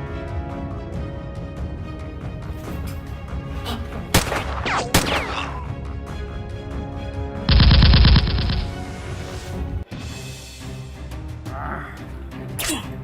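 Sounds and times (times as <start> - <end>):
background music: 0.0 - 13.0
gunshots with falling whine: 7.5 - 8.6.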